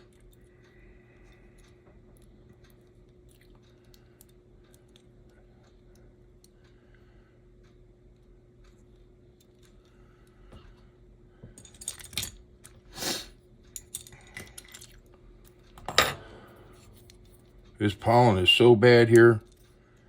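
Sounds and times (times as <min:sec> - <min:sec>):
small metal parts clinking: 0:11.6 - 0:12.8, 0:13.8 - 0:15.0
person blowing breath: 0:12.9 - 0:13.3.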